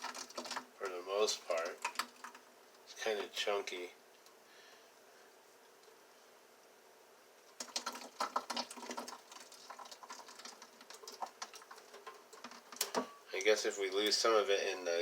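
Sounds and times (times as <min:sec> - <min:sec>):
thick slurry pouring and splattering: 0:00.0 - 0:00.7, 0:07.6 - 0:12.8.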